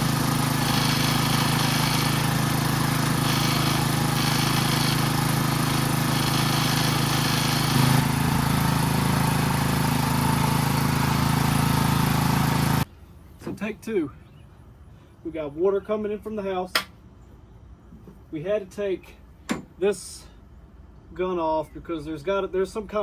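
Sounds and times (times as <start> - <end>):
pressure washer engine running: 0.0 - 12.9.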